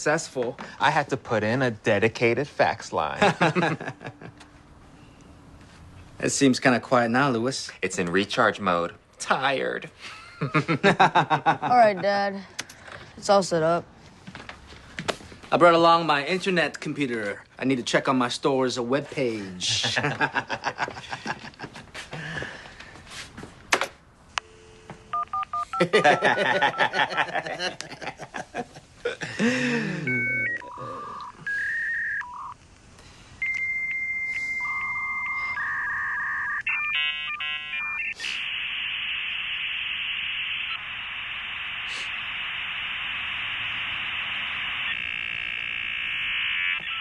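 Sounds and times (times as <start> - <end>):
modem hiss: 24.3 - 47.0
touch-tone dialing beeps: 24.4 - 26.8, 30.1 - 32.6, 33.4 - 38.2, 46.5 - 47.0.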